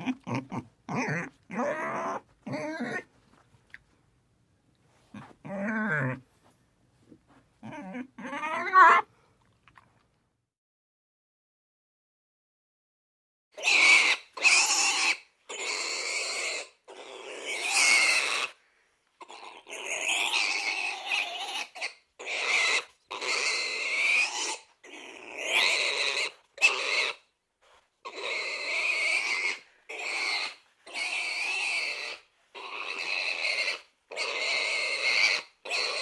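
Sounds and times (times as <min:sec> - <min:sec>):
pig squealing: 0:00.0 - 0:03.1, 0:07.6 - 0:09.1, 0:13.6 - 0:18.6, 0:19.2 - 0:27.3, 0:28.0 - 0:36.0.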